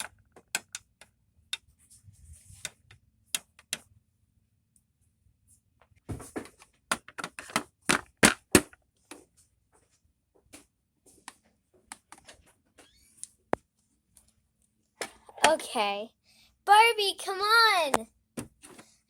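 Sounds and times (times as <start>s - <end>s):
plastic toys clicking and tapping: 0.0s - 1.8s, 2.6s - 3.9s, 6.9s - 8.8s.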